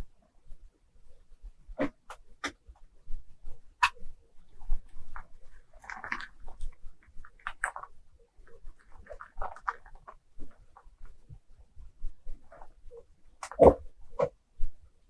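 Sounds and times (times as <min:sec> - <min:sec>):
lake ice creaking and popping: 0:01.8 - 0:03.0, 0:03.6 - 0:14.4.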